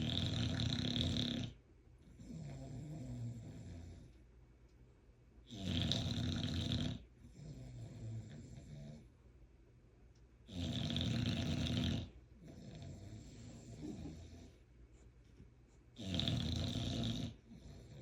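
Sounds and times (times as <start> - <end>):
dog snoring: 0.0 - 4.2, 5.4 - 9.1, 10.4 - 14.6, 16.0 - 18.0.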